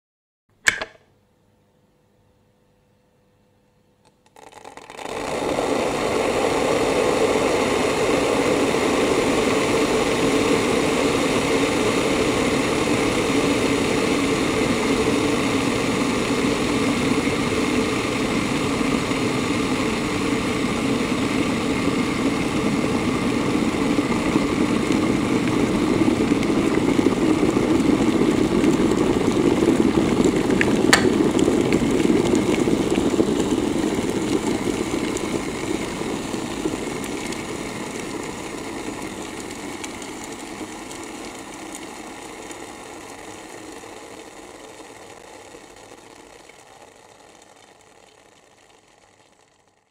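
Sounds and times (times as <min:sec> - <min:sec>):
electric kettle rumbling: 0:00.6 - 0:01.1, 0:04.1 - 0:49.9
kettle click: 0:00.6 - 0:01.1, 0:30.6 - 0:31.4.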